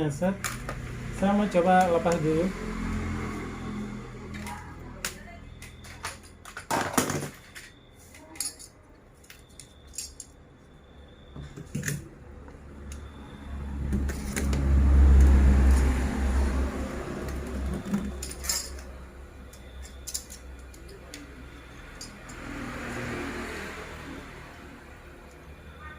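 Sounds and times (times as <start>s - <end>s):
metal tools clinking: 5.7s - 10.4s, 17.9s - 21.2s, 21.8s - 22.4s.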